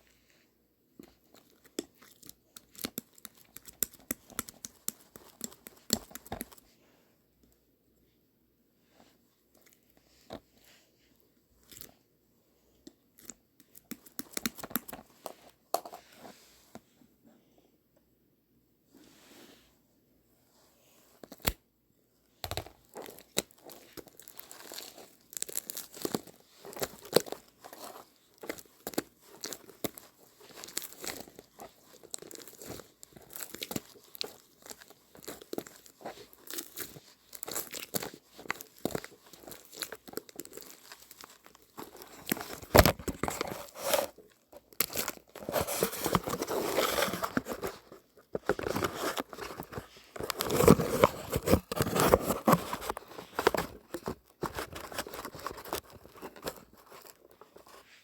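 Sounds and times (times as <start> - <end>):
material crinkling and rustling: 1.0 - 6.9, 22.3 - 58.0.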